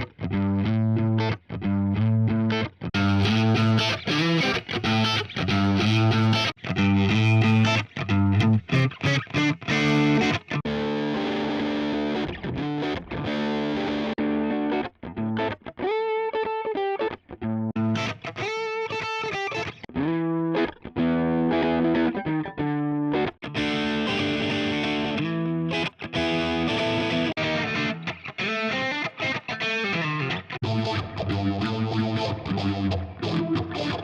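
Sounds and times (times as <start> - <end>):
distorted electric guitar: 0.0 - 34.0.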